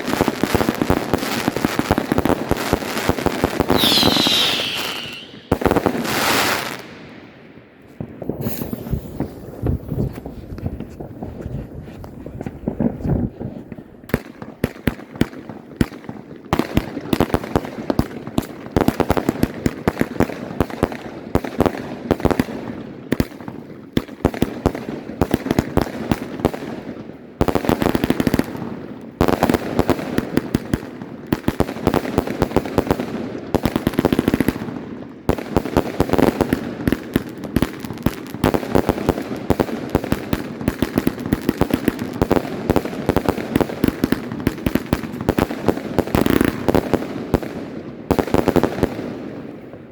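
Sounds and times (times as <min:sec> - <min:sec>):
firework battery bangs: 0:03.7 - 0:06.6.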